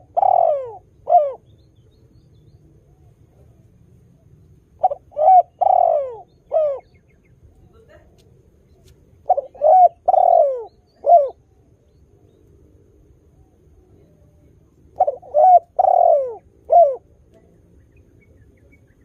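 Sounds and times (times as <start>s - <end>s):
dove cooing: 0.0s - 1.5s, 2.9s - 7.0s, 9.2s - 11.6s, 13.3s - 17.6s.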